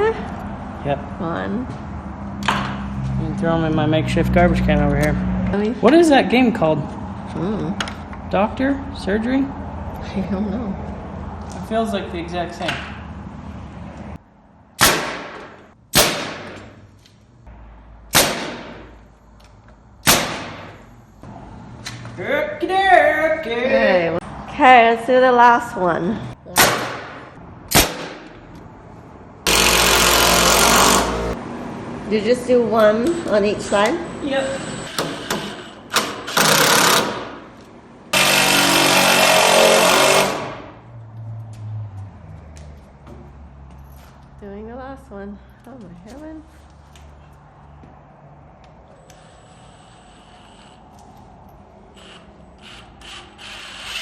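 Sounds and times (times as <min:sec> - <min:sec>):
nail gun firing: 0:14.8 - 0:16.6, 0:18.1 - 0:18.9, 0:20.0 - 0:20.8, 0:26.6 - 0:28.2, 0:29.5 - 0:31.2, 0:35.0 - 0:37.4, 0:38.2 - 0:40.6
impact driver driving fasteners: 0:29.5 - 0:31.2, 0:34.9 - 0:37.4, 0:38.2 - 0:40.6.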